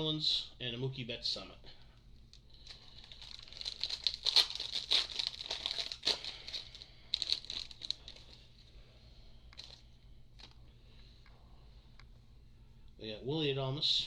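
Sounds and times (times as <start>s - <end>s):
foil wrapper tearing and crinkling: 2.6s - 8.4s.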